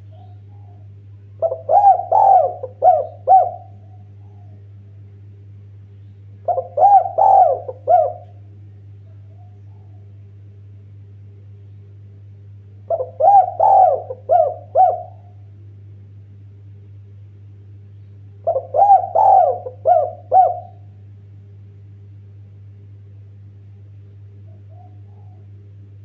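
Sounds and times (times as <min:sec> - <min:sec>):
dove cooing: 0:00.0 - 0:04.7, 0:06.4 - 0:08.4, 0:09.3 - 0:10.2, 0:12.9 - 0:15.4, 0:18.4 - 0:20.9, 0:24.4 - 0:25.7.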